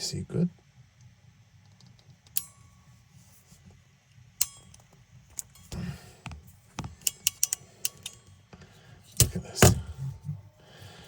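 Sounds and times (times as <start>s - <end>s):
crimping tool clicks: 4.4s - 8.3s.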